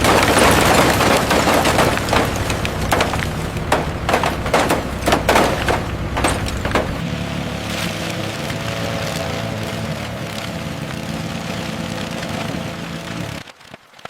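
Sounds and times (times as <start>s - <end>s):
sharp bangs and knocks: 0.0s - 7.0s
low machine hum: 0.0s - 13.4s.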